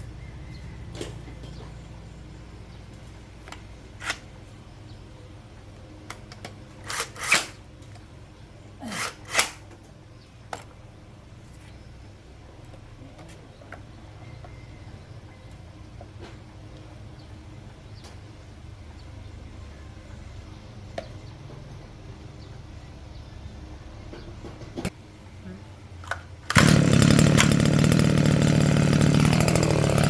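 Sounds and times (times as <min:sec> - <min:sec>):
tools clicking and scraping: 0:03.5 - 0:04.2, 0:06.1 - 0:07.6, 0:08.9 - 0:09.7.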